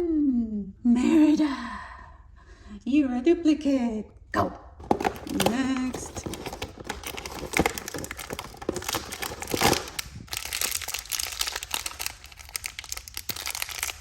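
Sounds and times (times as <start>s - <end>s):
packaging crinkling and tearing: 4.8s - 14.0s.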